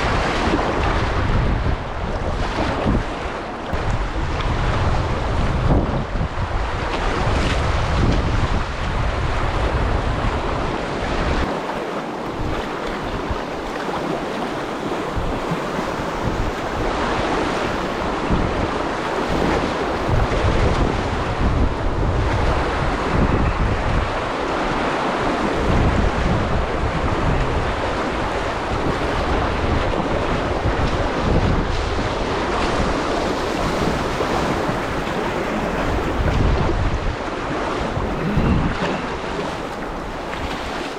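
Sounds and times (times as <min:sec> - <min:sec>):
wind buffeting microphone: 0:00.0 - 0:11.6, 0:12.2 - 0:40.9
river water rushing: 0:10.5 - 0:20.4, 0:22.7 - 0:40.9.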